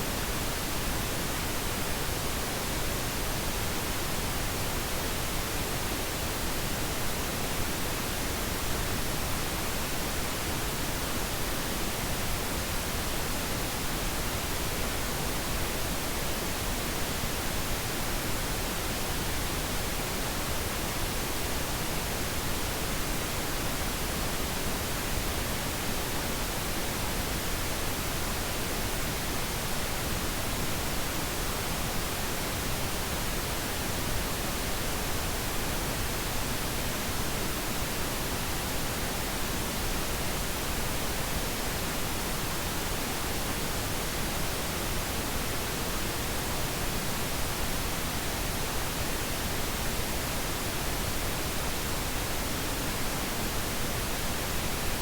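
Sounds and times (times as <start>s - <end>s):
pink noise hiss: 0.0s - 55.0s.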